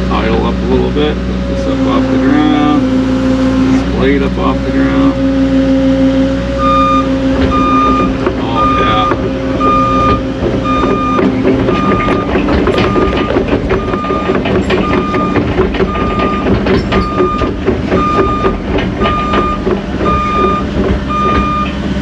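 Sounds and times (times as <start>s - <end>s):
diesel engine running: 0.0s - 22.0s
excavator travel alarm beeping: 6.6s - 21.8s.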